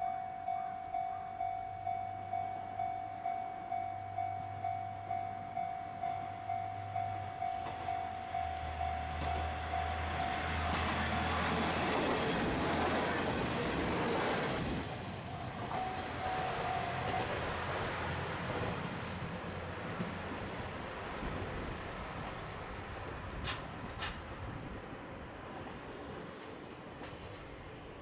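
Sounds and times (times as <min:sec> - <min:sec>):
diesel train engine hum: 0:00.0 - 0:28.0
train wheels rushing on rails: 0:07.4 - 0:28.0.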